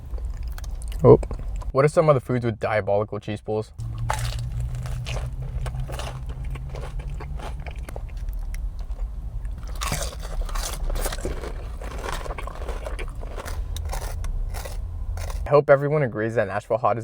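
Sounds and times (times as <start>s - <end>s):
crunching and chewing: 0.0s - 1.7s, 3.8s - 15.5s
steady low hum: 3.8s - 17.0s.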